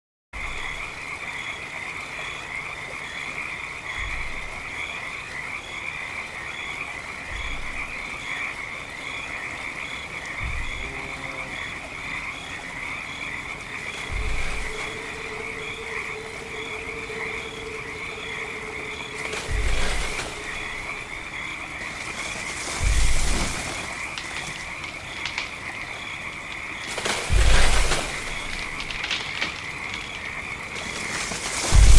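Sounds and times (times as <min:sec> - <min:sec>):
frogs croaking: 0:00.4 - 0:31.9
crunching rustle: 0:13.5 - 0:31.9.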